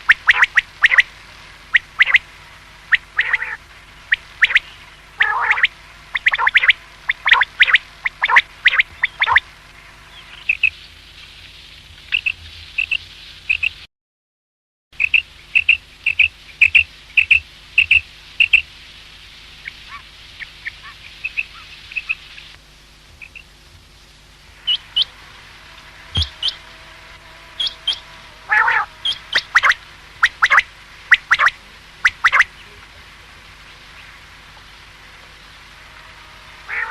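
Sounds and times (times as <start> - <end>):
quail calling: 0.0 - 1.1, 1.7 - 2.3, 2.9 - 9.4, 19.6 - 22.5, 26.1 - 26.8, 27.5 - 32.6, 36.2 - 36.9.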